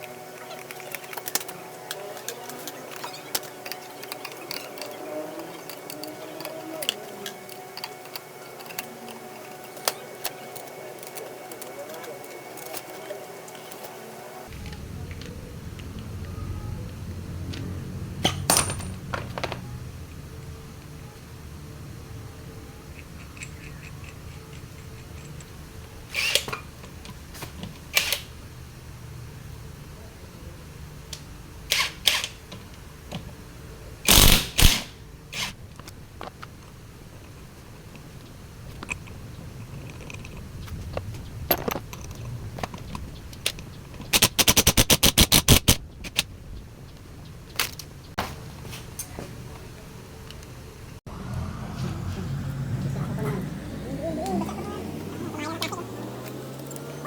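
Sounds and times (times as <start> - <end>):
scooter engine running: 0.0 - 26.1, 51.1 - 57.0
faint low hum: 0.0 - 44.2
rapid run of clicks: 37.2 - 46.3.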